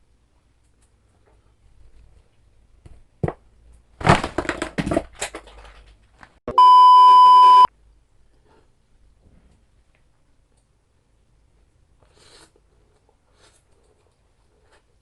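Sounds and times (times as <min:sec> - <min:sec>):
loud electronic beep: 0:06.5 - 0:07.7.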